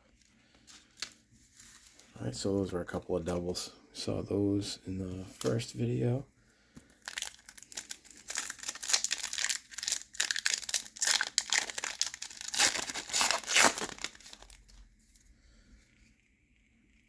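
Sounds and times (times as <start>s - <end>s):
wrapper tearing and crinkling: 7.0s - 14.8s.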